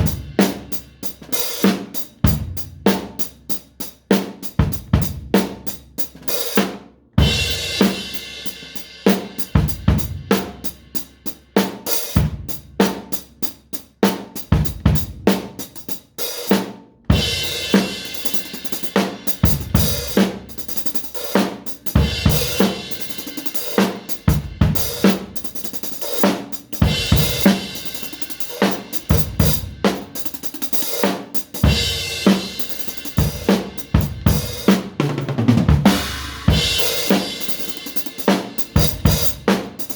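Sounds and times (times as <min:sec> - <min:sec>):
bass drum: 0:00.0 - 0:01.4, 0:02.2 - 0:03.5, 0:04.5 - 0:06.3, 0:09.3 - 0:11.1, 0:12.2 - 0:13.4, 0:14.5 - 0:15.8, 0:17.1 - 0:39.9
hi-hat hits: 0:00.0 - 0:05.0, 0:07.4 - 0:35.0, 0:35.8 - 0:39.9.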